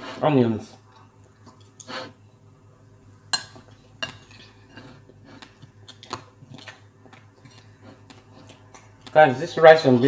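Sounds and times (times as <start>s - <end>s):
low steady hum: 0.0s - 10.0s
wooden spoons scraping plates: 4.0s - 6.8s.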